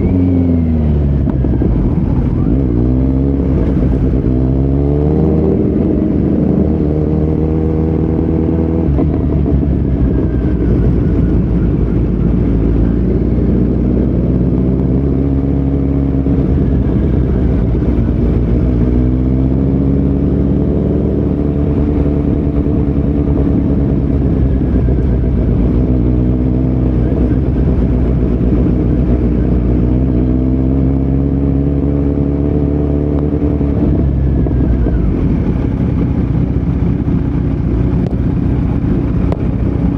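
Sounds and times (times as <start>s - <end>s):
motorcycle exhaust revving: 0.0s - 39.9s.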